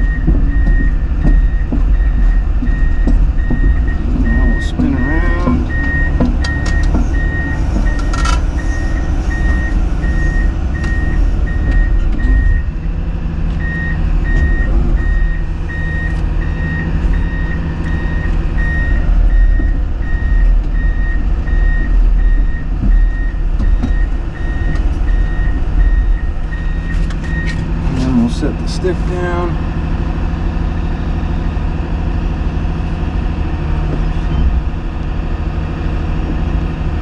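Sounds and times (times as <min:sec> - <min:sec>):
high-pitched warning beep: 0:00.0 - 0:12.7
excavator diesel engine rumbling: 0:00.0 - 0:37.0.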